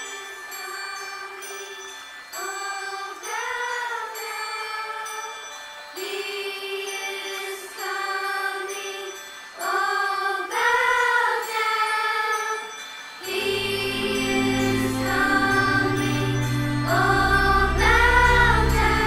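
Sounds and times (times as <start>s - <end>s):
choir holding long notes: 2.4s - 19.0s
low bass drone: 13.3s - 19.0s.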